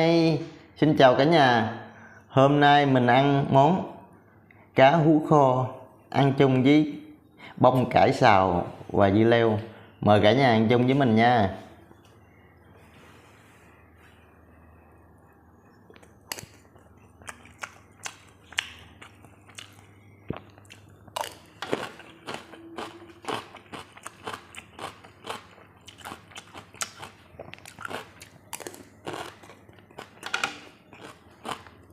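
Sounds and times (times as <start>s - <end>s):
person chewing crunchy food: 15.8s - 31.9s.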